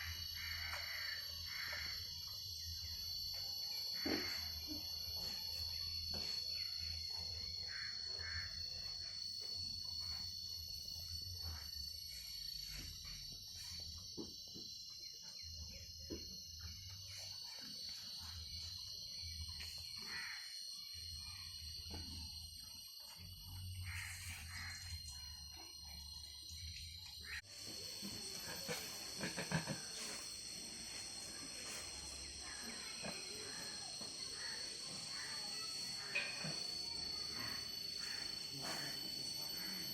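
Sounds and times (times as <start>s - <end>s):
high insect drone: 0.0s - 39.9s
pigs grunting and snuffling: 28.0s - 30.3s.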